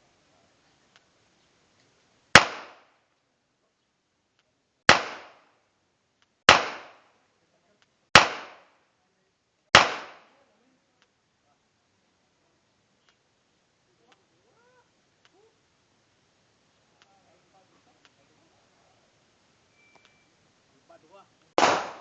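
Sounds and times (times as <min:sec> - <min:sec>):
pistol shots with echo: 0:02.4 - 0:02.9, 0:04.9 - 0:05.4, 0:06.5 - 0:07.0, 0:08.2 - 0:08.7, 0:09.7 - 0:10.3, 0:21.6 - 0:22.0.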